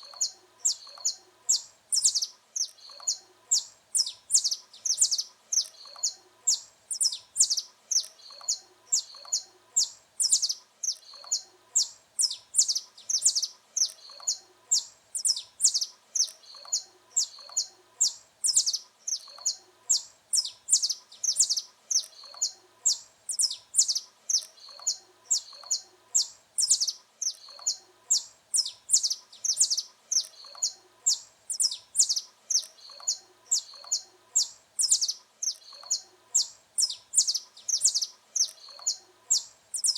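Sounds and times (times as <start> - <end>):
finch chirping: 0.0 - 39.9.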